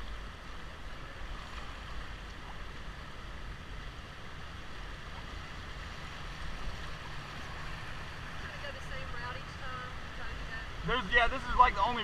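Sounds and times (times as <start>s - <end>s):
river water rushing over rocks: 0.0s - 12.0s.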